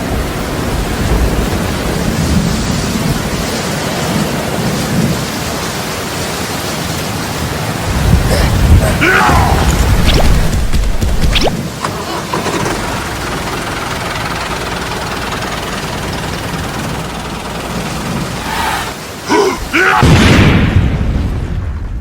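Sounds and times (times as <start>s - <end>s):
steady loud noise: 7.7s - 20.8s
loud boom-like burst: 20.0s - 22.0s.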